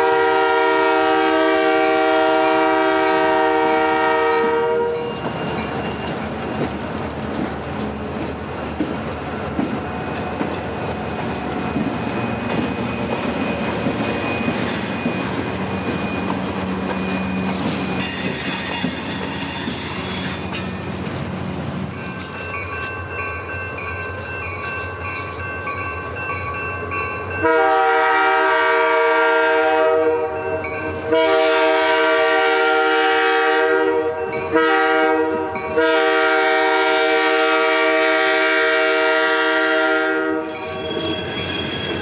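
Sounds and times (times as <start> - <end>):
train horn: 0.0 - 5.2, 27.4 - 40.9
train wheels clicking over rails: 4.7 - 22.9
wheel squeal: 5.0 - 6.8, 11.4 - 20.9, 40.4 - 42.0.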